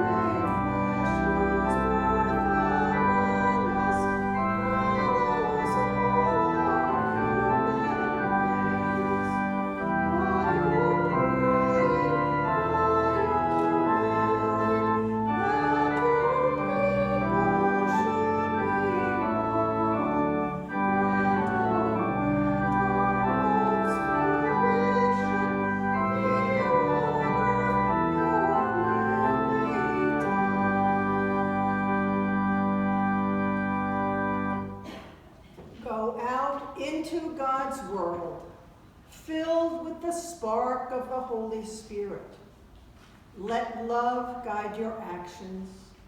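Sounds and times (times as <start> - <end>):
church organ playing a hymn: 0.0 - 35.2.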